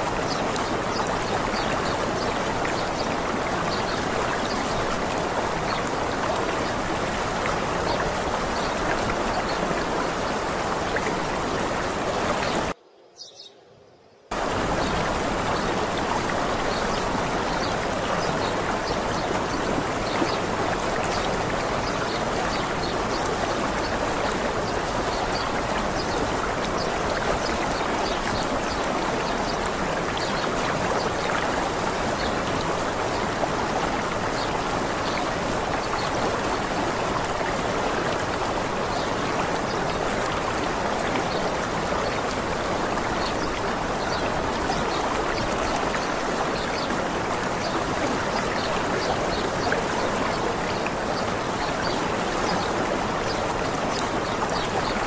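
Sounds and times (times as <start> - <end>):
waterfall rushing: 14.3 - 55.0.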